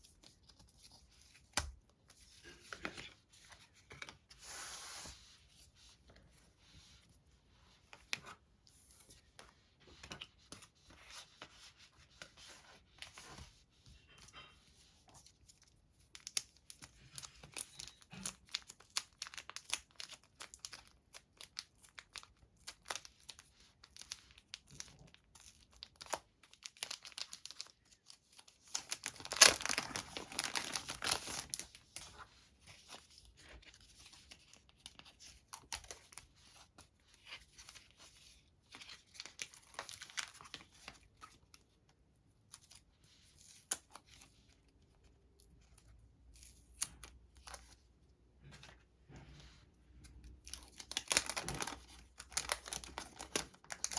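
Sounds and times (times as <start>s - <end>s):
packaging crinkling and rustling: 16.2s - 32.3s, 38.8s - 41.4s, 50.3s - 53.9s
packaging tearing: 28.7s - 31.6s.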